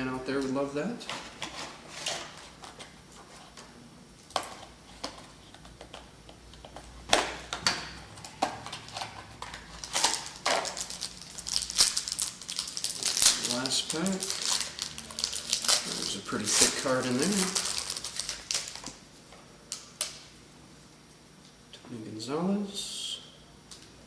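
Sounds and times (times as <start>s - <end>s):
card pack wrapper crinkling: 8.8s - 19.0s.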